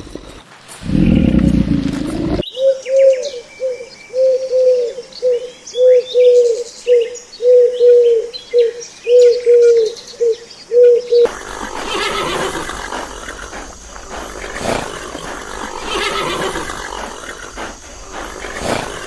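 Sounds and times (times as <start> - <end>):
bird cooing: 0.0 - 19.0
loud rough noise: 11.3 - 19.0.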